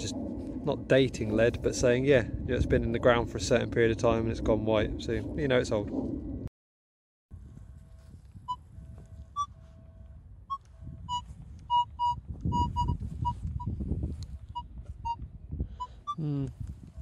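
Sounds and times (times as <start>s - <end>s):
low rumbling noise: 0.0s - 6.5s
metal detector low tones: 7.4s - 17.0s
metal detector high beeps: 7.6s - 13.8s, 14.5s - 15.2s.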